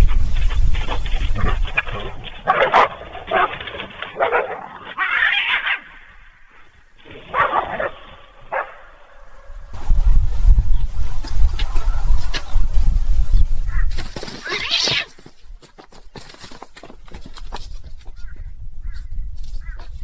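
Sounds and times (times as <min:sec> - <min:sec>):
dog barking: 0:01.4 - 0:04.8, 0:07.1 - 0:09.5.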